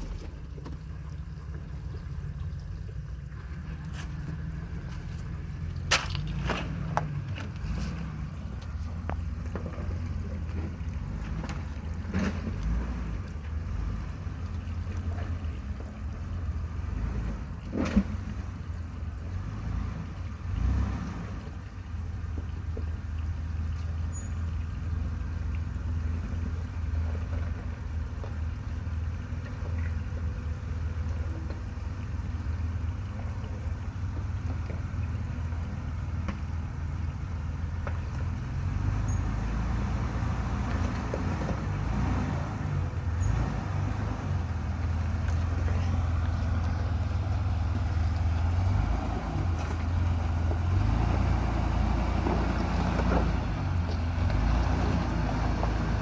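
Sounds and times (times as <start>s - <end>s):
low engine rumble: 0.0s - 56.0s
knocks and clunks from rocks: 3.3s - 13.8s, 16.9s - 18.5s, 26.3s - 28.6s, 40.2s - 42.4s, 47.6s - 56.0s.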